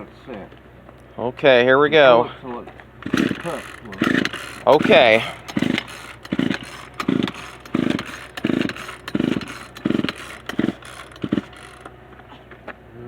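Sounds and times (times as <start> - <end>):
chainsaw recoil starter pulls: 3.0 - 12.0.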